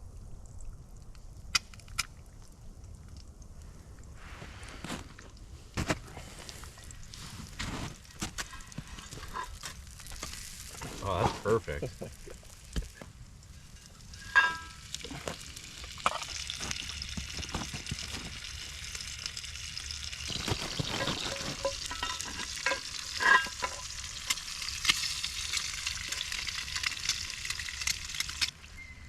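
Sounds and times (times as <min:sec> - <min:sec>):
food sizzling in a pan: 0:09.8 - 0:28.5
metal utensil clinking on pan: 0:13.7 - 0:14.9, 0:21.0 - 0:24.0.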